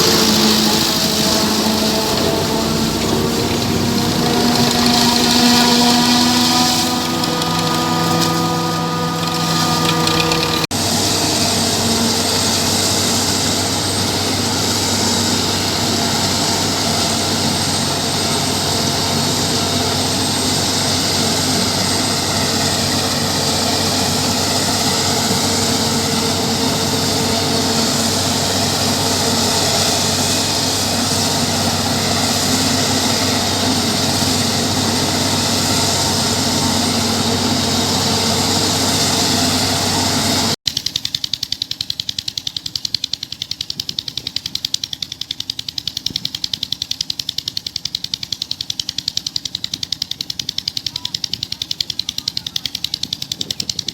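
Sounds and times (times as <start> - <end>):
forage harvester engine hum: 0.0 - 40.6
steady whine of several tones: 0.0 - 40.6.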